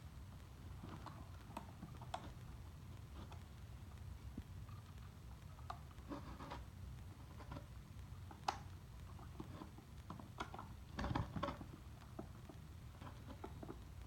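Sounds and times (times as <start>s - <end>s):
small clicks: 8.3s - 14.0s.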